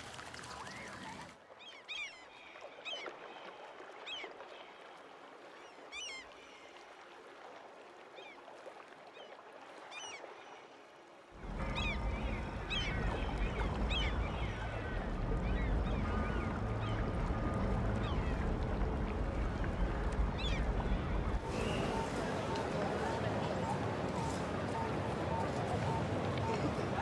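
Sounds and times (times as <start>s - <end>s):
loud low rumble: 11.4s - 22.2s
birds chirping: 11.4s - 27.0s.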